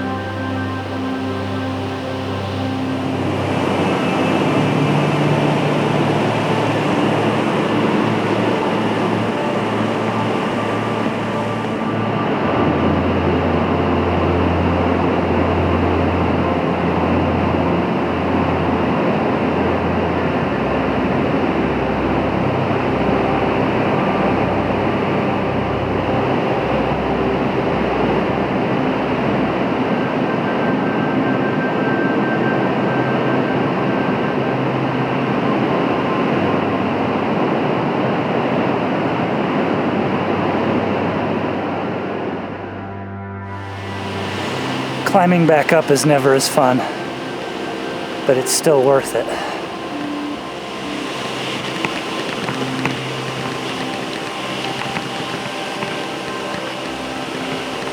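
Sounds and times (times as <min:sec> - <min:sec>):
large waterfall rushing: 0:00.0 - 0:42.0, 0:43.6 - 0:57.9.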